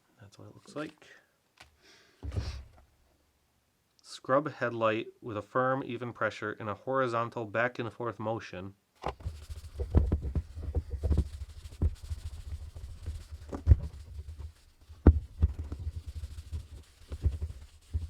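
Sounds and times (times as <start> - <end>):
dull thumps: 2.2 - 2.9, 9.1 - 18.0
hand scrubbing plastic lens: 9.2 - 18.0.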